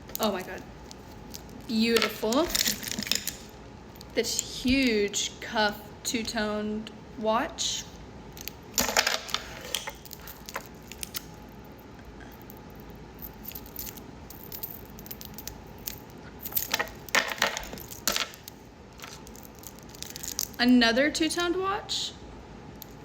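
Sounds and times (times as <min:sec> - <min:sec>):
metal watch bands clinking: 0:00.1 - 0:05.0, 0:08.4 - 0:11.4, 0:12.4 - 0:20.6.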